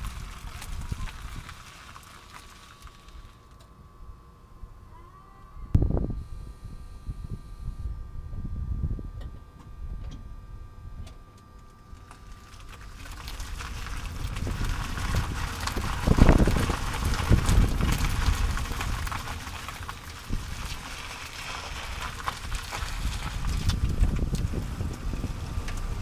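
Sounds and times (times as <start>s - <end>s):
road and tyre noise: 0.0s - 3.6s, 11.8s - 26.0s
heavy low bumps: 12.2s - 26.0s.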